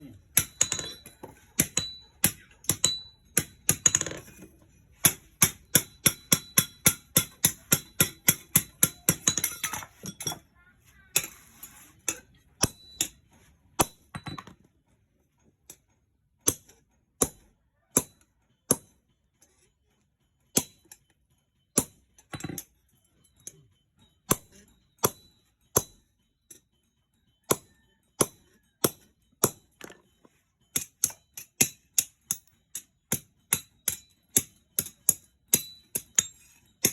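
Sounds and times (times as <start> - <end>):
hammer tapping on metal: 0.2 - 4.4, 5.0 - 10.4, 12.0 - 14.5, 30.7 - 36.9.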